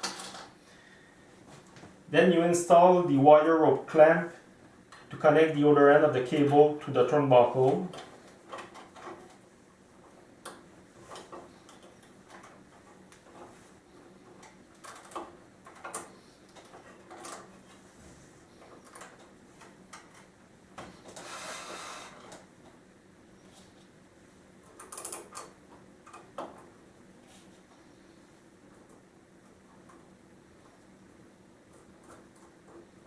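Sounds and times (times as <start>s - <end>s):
scraping rustle: 21.1s - 22.4s.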